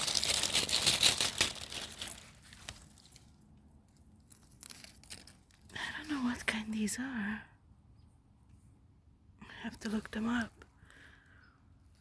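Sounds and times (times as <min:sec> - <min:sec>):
close rustling and crackling: 0:00.0 - 0:06.6.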